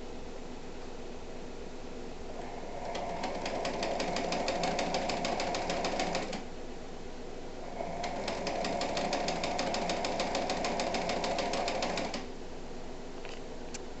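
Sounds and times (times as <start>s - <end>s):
sewing machine running: 2.3s - 6.5s, 7.6s - 12.3s.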